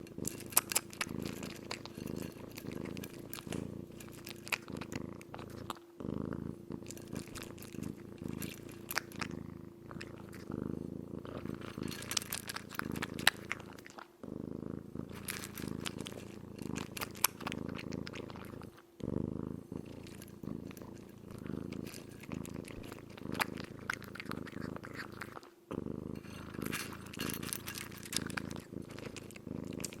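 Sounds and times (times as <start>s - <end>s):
kitten chewing food: 0.0s - 5.9s, 6.8s - 10.6s, 11.3s - 14.2s, 15.1s - 18.8s, 19.8s - 30.0s.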